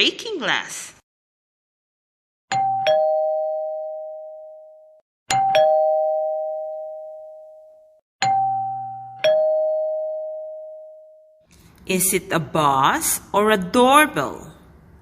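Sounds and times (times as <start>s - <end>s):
two-tone doorbell chime: 2.5s - 11.4s.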